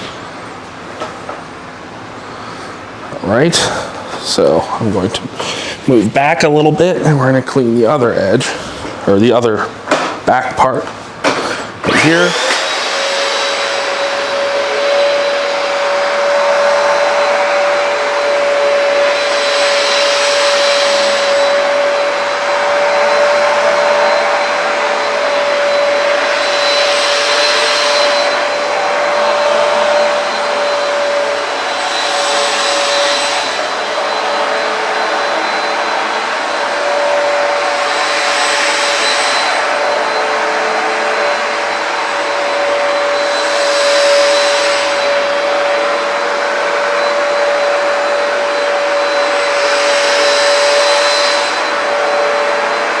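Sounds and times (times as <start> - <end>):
carpet cleaner motor whine: 11.1 - 53.0
loud rushing hiss: 11.6 - 53.0.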